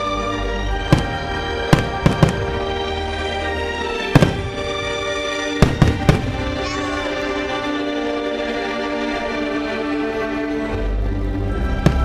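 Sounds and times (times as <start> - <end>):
loud orchestral music: 0.0 - 12.0
fireworks bursting: 0.8 - 2.9, 4.0 - 7.5.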